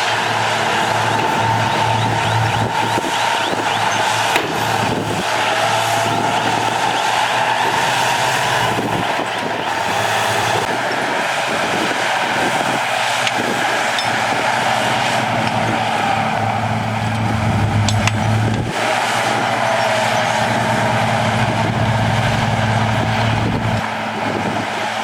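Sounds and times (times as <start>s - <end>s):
heavy diesel machinery running: 0.0s - 25.0s
mechanical whine: 0.0s - 25.0s
sharp metal clanks: 13.3s - 14.3s.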